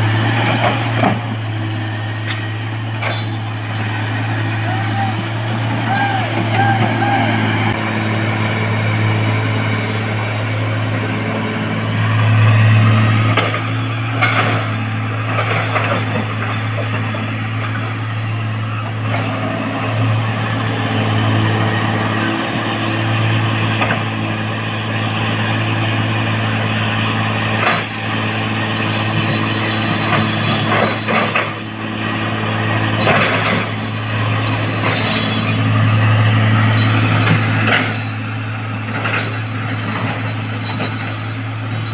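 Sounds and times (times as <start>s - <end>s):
diesel engine running under load: 0.0s - 41.9s
metallic knocks and clanks: 3.0s - 3.4s, 13.3s - 17.8s, 29.1s - 31.7s, 32.9s - 35.8s.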